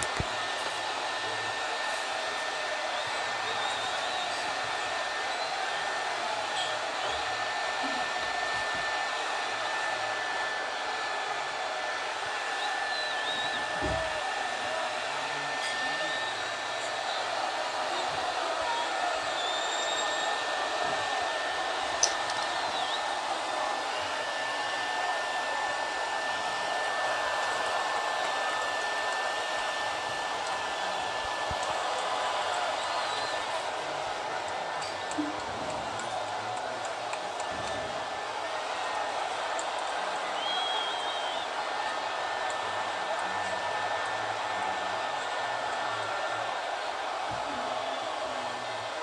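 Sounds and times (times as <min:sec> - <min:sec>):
audience applause: 0:00.0 - 0:49.0
faint whistles: 0:00.8 - 0:09.0, 0:12.4 - 0:24.3, 0:24.9 - 0:34.2, 0:38.8 - 0:48.9.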